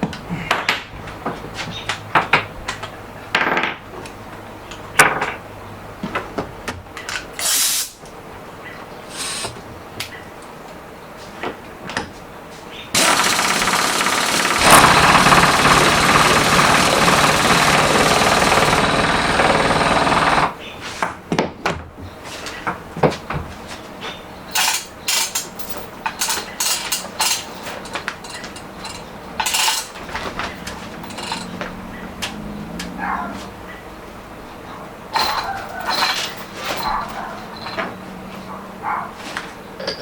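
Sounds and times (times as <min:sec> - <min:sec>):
power tool running: 0:09.1 - 0:09.5, 0:13.0 - 0:20.6
sharp knocks and clatter: 0:13.0 - 0:21.9, 0:24.6 - 0:32.4.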